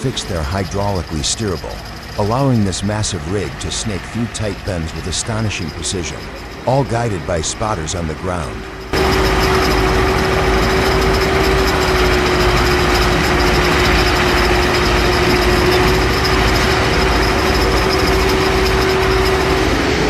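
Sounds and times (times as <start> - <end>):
heavy truck engine running: 0.0 - 20.0.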